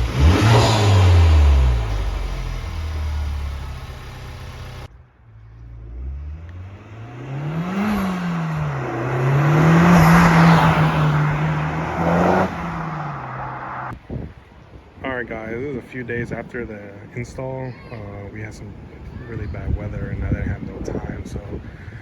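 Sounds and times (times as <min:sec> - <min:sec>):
car engine revving in drive-bys: 0:00.0 - 0:14.0.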